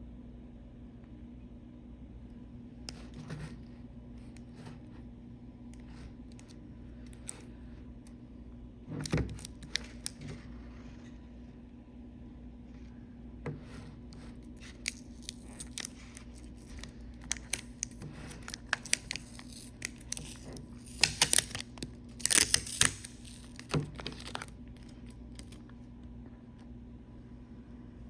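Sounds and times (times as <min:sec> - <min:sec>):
packaging tearing: 0:09.3 - 0:10.2, 0:14.6 - 0:25.6
food packaging crinkling: 0:09.3 - 0:10.5, 0:14.5 - 0:25.8.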